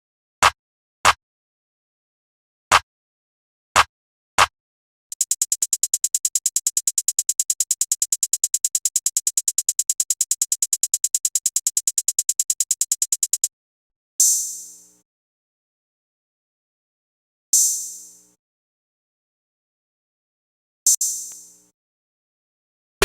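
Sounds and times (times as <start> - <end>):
drum machine hi-hat roll: 5.1 - 13.5.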